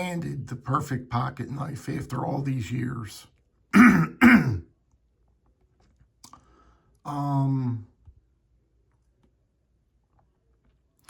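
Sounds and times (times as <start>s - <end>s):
faint mouth clicks: 6.2s - 6.5s
man's wordless vocal tone: 7.1s - 7.9s.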